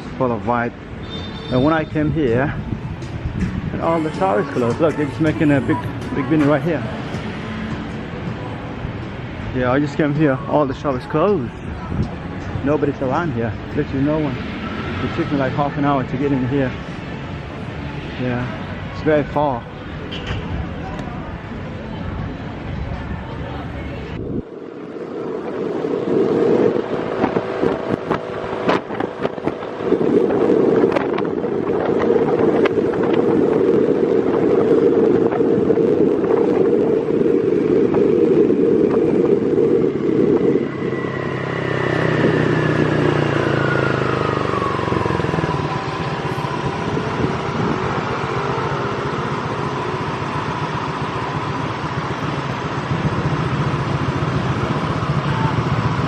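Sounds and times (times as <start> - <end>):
road traffic: 0.0 - 56.0
wind on microphone: 0.0 - 56.0
motorbike engine: 24.3 - 56.0.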